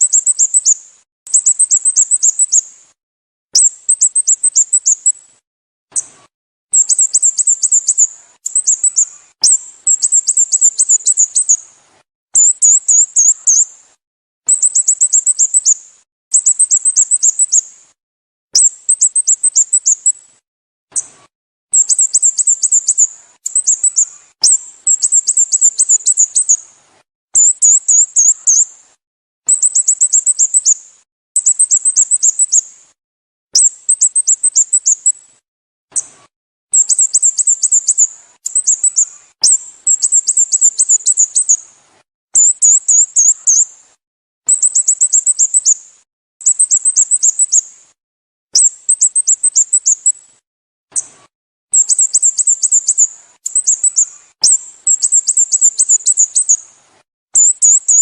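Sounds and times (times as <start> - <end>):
bird high-pitched chirps: 0.0 - 2.8, 3.5 - 5.3, 5.9 - 11.7, 12.4 - 13.8, 14.5 - 17.8, 18.5 - 20.3, 20.9 - 26.8, 27.4 - 28.8, 29.5 - 32.8, 33.6 - 41.8, 42.4 - 43.8, 44.5 - 47.8, 48.6 - 51.1, 51.7 - 56.7, 57.4 - 58.0.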